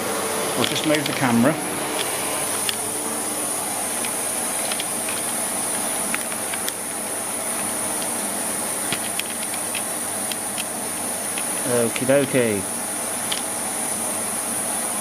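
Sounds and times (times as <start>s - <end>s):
vacuum cleaner running: 0.0s - 15.0s.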